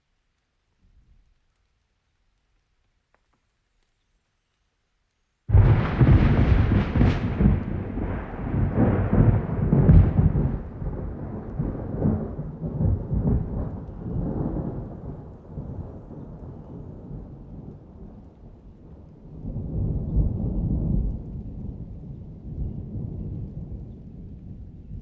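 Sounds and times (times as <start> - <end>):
thunder cracking and rumbling: 5.5 - 25.0.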